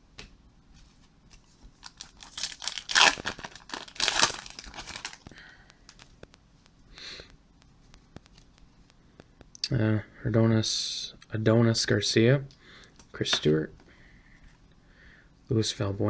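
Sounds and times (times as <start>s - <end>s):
wrapper tearing and crinkling: 1.8s - 6.2s.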